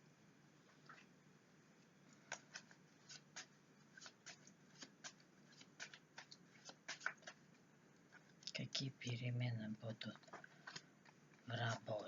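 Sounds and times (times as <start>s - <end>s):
cards being shuffled: 2.2s - 7.4s.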